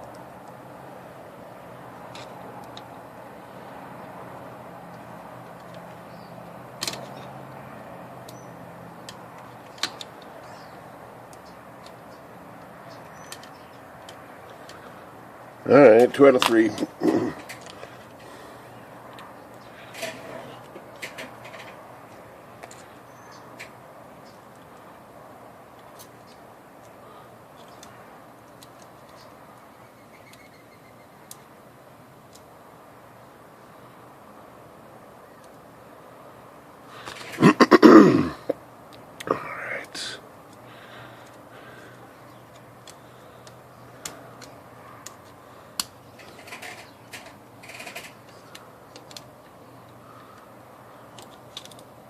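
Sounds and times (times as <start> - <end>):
small mechanism parts clicking: 41.2 - 50.5, 51.1 - 52.0
metallic clicks and taps of tools: 51.1 - 51.9.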